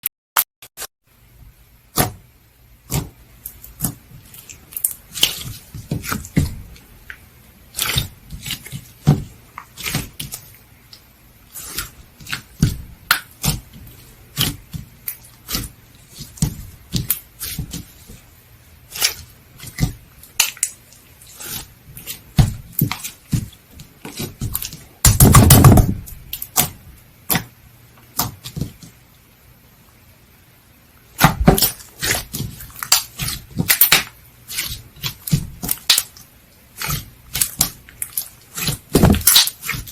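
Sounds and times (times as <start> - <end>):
slime squelch: 2.8 - 25.1, 31.0 - 39.9.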